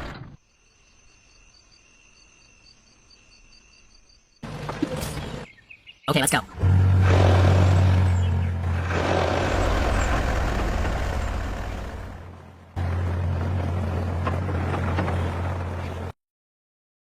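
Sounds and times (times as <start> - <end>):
engine humming: 4.4 - 5.6, 6.2 - 16.2.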